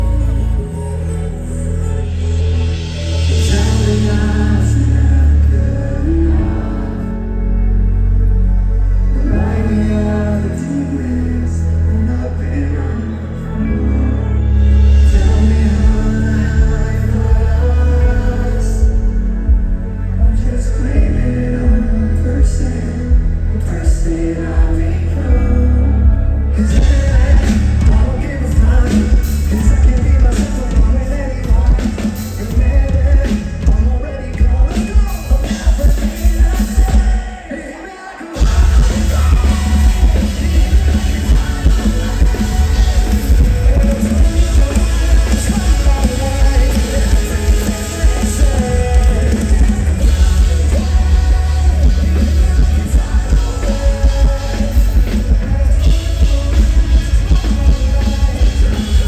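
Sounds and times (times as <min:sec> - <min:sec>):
live rock band playing: 0:00.0 - 0:37.7, 0:38.3 - 0:59.0
person singing: 0:00.0 - 0:59.0.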